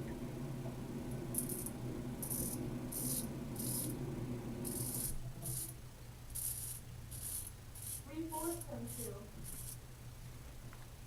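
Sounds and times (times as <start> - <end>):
steady low hum: 0.0 - 11.0
razor scraping stubble: 4.7 - 9.8.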